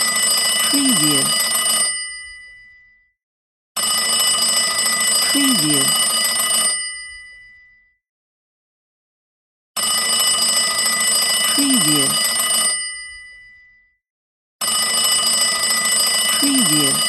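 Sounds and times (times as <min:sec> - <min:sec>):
old telephone bells ringing: 0:00.0 - 0:02.9, 0:03.8 - 0:07.8, 0:09.8 - 0:13.8, 0:14.6 - 0:17.0.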